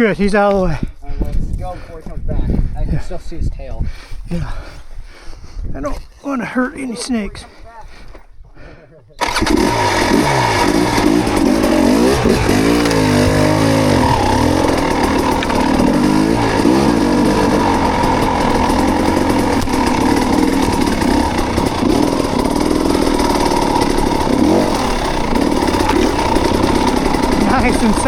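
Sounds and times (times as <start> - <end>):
off-road motorcycle engine revving: 9.2 - 28.0.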